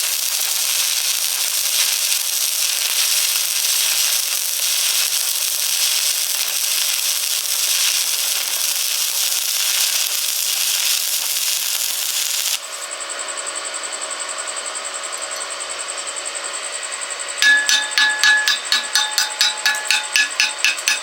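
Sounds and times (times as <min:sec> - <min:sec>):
welding arc crackling: 0:00.0 - 0:12.9, 0:17.4 - 0:21.0.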